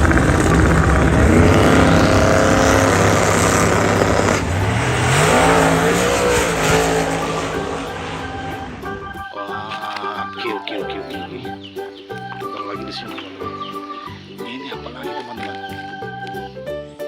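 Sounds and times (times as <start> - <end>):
race car engine revving: 0.0 - 9.2.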